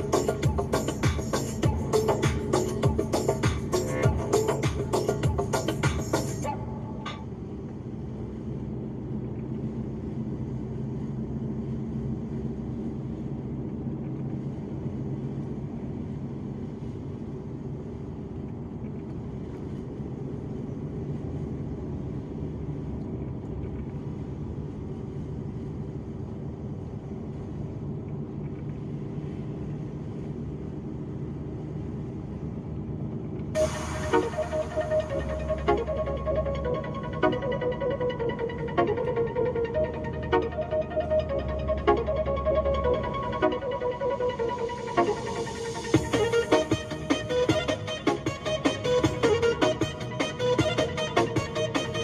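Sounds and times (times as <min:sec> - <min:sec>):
road and tyre noise: 0:00.0 - 0:52.0
truck engine running: 0:00.0 - 0:52.0.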